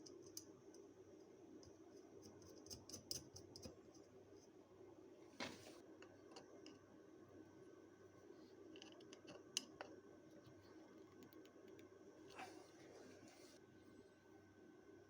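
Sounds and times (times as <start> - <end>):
faint clicks and light knocks: 8.7 - 11.9.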